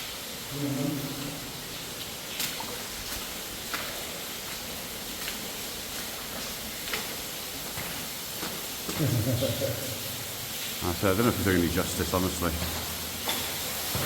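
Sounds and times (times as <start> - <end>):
waterfall rushing: 0.0 - 5.1.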